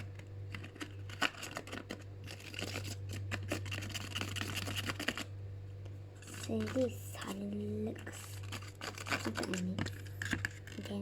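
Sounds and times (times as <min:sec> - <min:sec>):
spoon scraping a bowl: 0:08.0 - 0:10.9.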